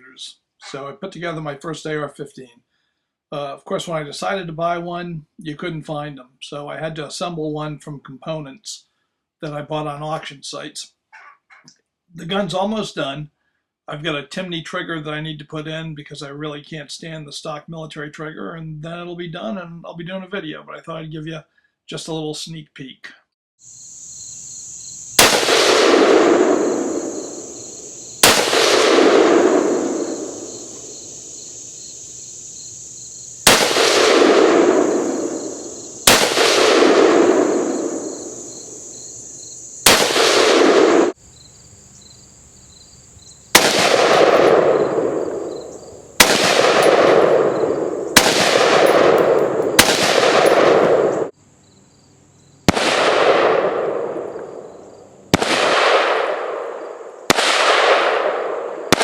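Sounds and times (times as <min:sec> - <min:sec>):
rifle shots with echo: 0:25.2 - 0:31.8, 0:33.4 - 0:39.0, 0:39.8 - 0:41.2, 0:43.5 - 0:51.3, 0:52.7 - 0:59.0.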